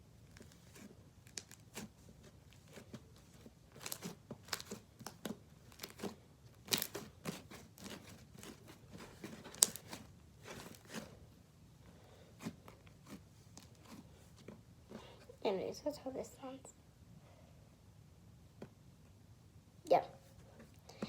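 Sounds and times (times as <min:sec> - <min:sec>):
slime crackling and popping: 0:00.3 - 0:02.0, 0:03.7 - 0:11.0.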